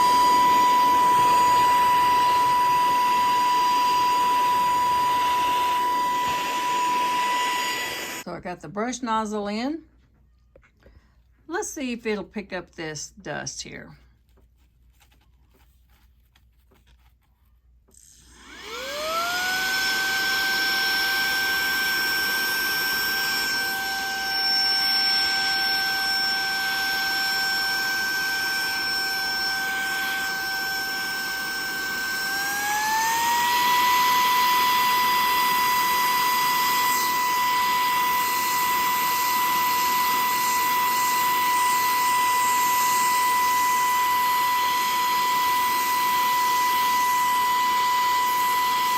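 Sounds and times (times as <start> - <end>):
handheld vacuum cleaner whine: 0.0 - 8.3, 17.9 - 48.9.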